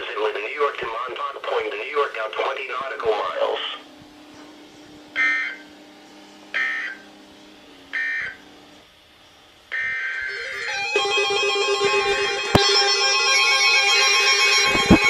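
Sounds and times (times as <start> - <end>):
warbling digital data tones: 9.7 - 15.0.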